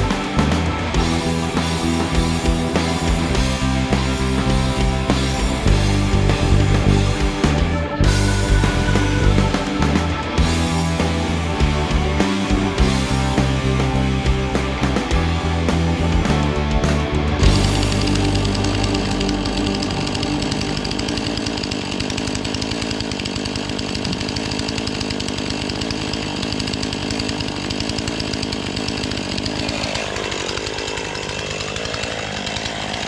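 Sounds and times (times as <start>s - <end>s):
chainsaw running at high revs: 17.4s - 33.0s.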